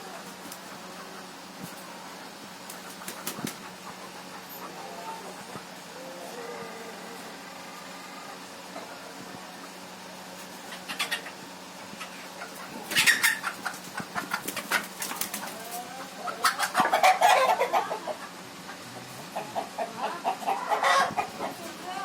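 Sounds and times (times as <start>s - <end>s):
roosters flapping wings: 2.6s - 3.7s, 13.8s - 15.8s.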